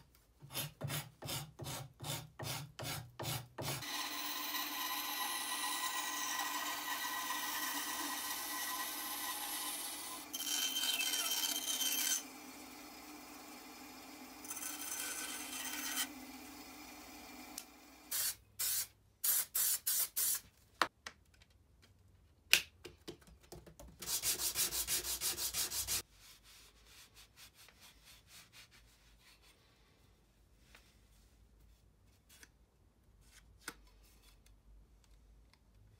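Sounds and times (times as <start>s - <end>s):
sanding or rasping wood: 24.0s - 29.2s.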